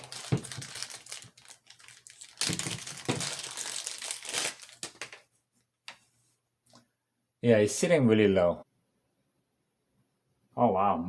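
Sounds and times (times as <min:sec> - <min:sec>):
packaging crinkling: 0:00.0 - 0:05.2.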